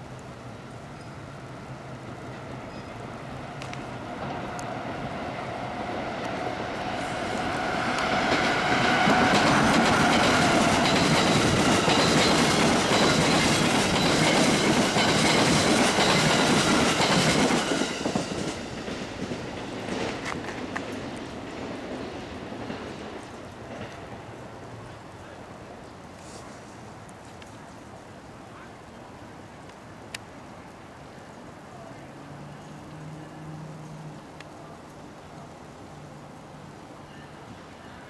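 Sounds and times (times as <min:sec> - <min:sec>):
train wheels clattering: 0:07.4 - 0:24.3.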